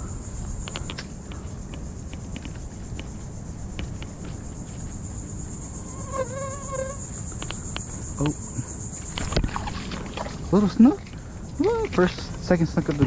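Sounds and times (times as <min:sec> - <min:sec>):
insects chorus: 0:00.0 - 0:13.0
low background rumble: 0:00.0 - 0:13.0
faint clicks: 0:00.6 - 0:03.2, 0:07.3 - 0:08.4.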